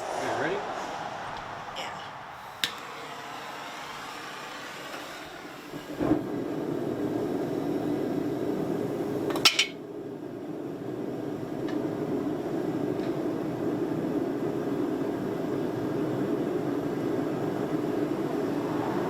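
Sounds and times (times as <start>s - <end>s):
gas burner roaring: 0.0s - 19.0s
burner lighting thump: 2.4s - 6.8s, 12.9s - 13.4s.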